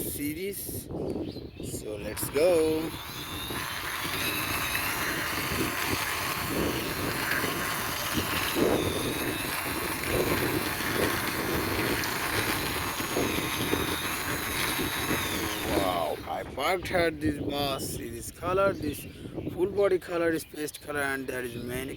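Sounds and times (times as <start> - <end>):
plastic toy wheels rolling: 2.1 - 16.4.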